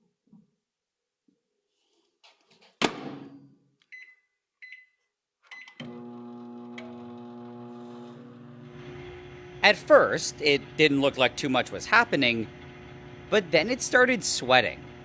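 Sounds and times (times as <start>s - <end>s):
keypad beeps: 3.9s - 5.8s
microwave oven humming: 5.8s - 15.0s.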